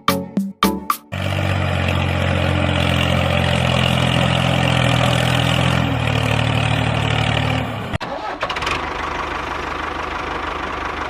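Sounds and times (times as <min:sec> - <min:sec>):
percussive music: 0:00.0 - 0:01.2
engine running steadily: 0:01.1 - 0:08.0, 0:08.6 - 0:11.0.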